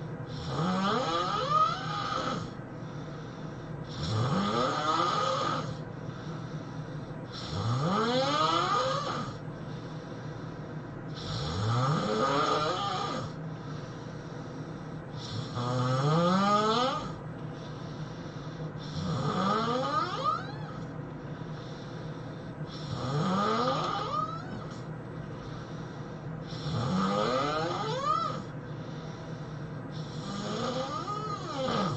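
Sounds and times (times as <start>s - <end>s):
man snoring: 0.3s - 2.6s, 3.9s - 5.8s, 7.3s - 9.4s, 11.1s - 13.4s, 15.2s - 17.2s, 18.8s - 20.8s, 22.7s - 24.8s, 26.4s - 28.5s, 30.0s - 31.9s.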